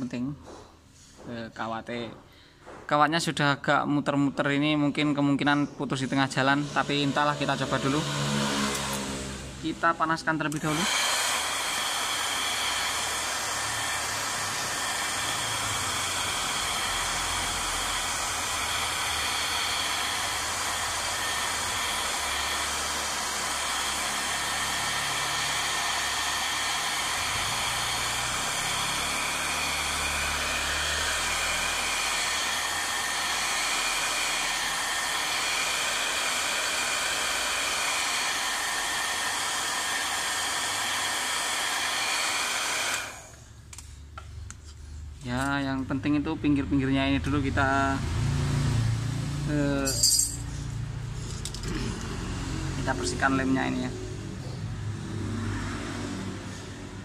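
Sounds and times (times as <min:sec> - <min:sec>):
hair dryer blowing: 0:06.0 - 0:43.6, 0:47.2 - 0:57.0.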